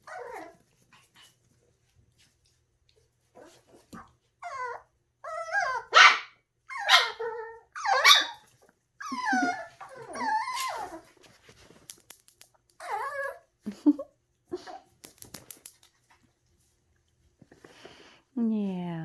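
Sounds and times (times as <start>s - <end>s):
puppy yipping and whining: 0.0s - 0.6s, 4.4s - 11.2s, 12.8s - 13.5s.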